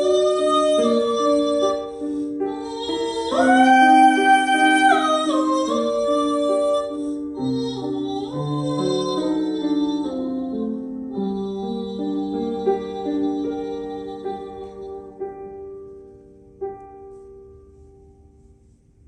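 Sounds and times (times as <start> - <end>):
woman singing long notes: 0.0 - 15.2.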